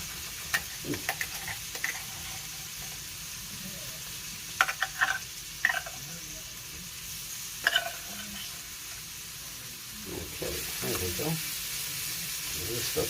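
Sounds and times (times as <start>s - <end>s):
hash sizzling in a skillet: 0.0s - 13.0s.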